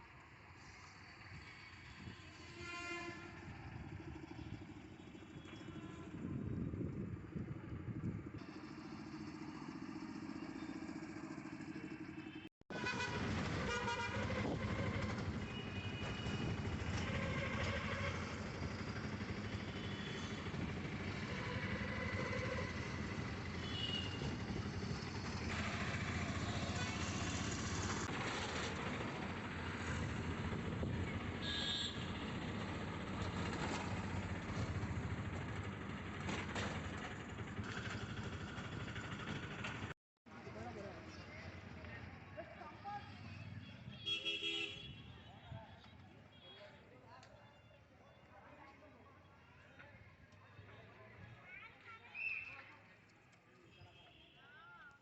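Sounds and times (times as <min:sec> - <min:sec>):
vehicle horns honking: 0:02.4 - 0:03.6, 0:05.1 - 0:06.4, 0:12.2 - 0:18.4, 0:19.5 - 0:20.5, 0:23.5 - 0:24.4, 0:31.4 - 0:32.1, 0:43.4 - 0:45.5
motorcycles and cars passing: 0:03.4 - 0:45.0.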